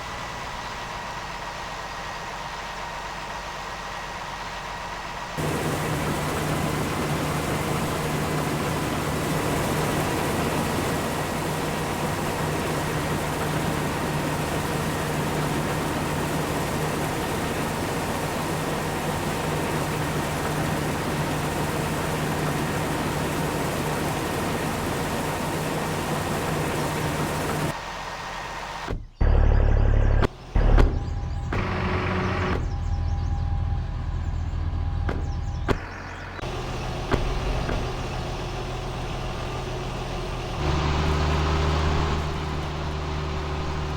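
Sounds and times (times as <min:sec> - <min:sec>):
farm machinery engine drone: 0:00.0 - 0:43.9
high machine whine: 0:05.4 - 0:27.7, 0:36.4 - 0:43.9.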